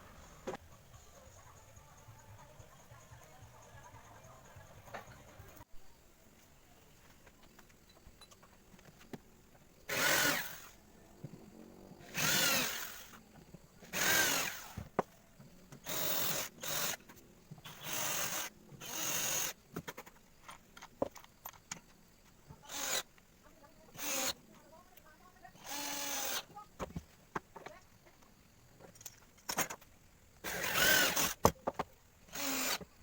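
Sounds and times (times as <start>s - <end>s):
power drill bursts: 9.9s - 10.8s, 12.1s - 13.2s, 13.8s - 14.9s, 15.8s - 17.0s, 17.7s - 19.6s, 22.6s - 23.1s, 23.9s - 24.4s, 25.6s - 26.5s, 30.4s - 31.5s, 32.3s - 32.9s.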